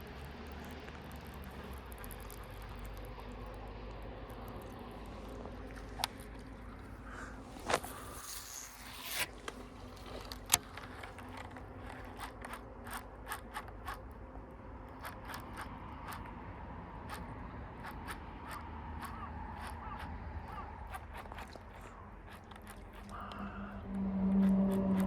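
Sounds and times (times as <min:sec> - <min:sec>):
reel winding ticks: 0:00.0 - 0:25.0
fishing line hissing off spool: 0:06.9 - 0:10.5
reel click: 0:07.6 - 0:14.0.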